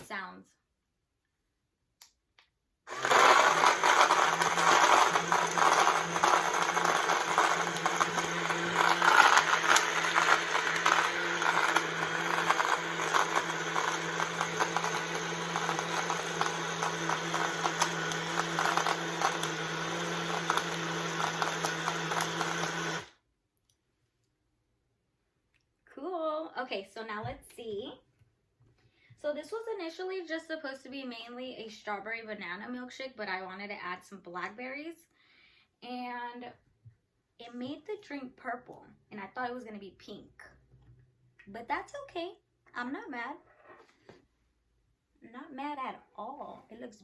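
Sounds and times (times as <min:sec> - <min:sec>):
ice rattling in blender: 0:02.9 - 0:23.1
blender motor hum: 0:02.9 - 0:23.2.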